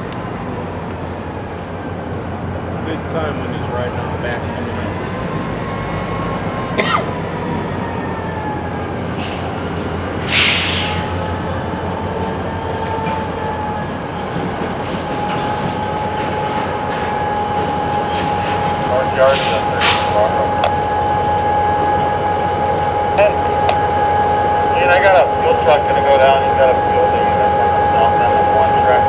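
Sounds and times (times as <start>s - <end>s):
high wheel squeal: 0.0s - 29.0s
railcars rumbling: 0.0s - 29.0s
short air hiss: 10.3s - 11.0s.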